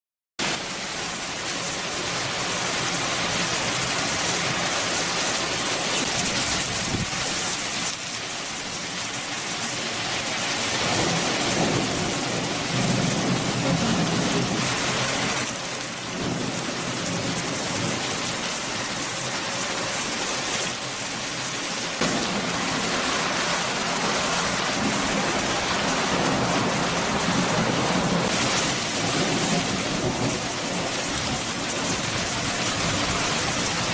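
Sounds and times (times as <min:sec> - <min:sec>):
heavy rain: 0:00.4 - 0:33.9
thunder rumbling: 0:10.7 - 0:18.5, 0:22.0 - 0:33.9.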